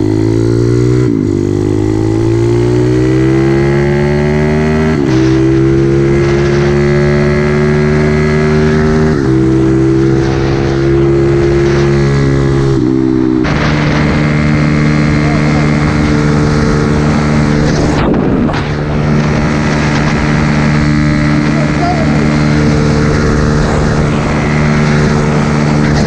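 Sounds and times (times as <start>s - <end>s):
small motorbike engine accelerating: 0.0s - 26.0s
wind buffeting microphone: 9.0s - 21.4s, 22.1s - 26.0s.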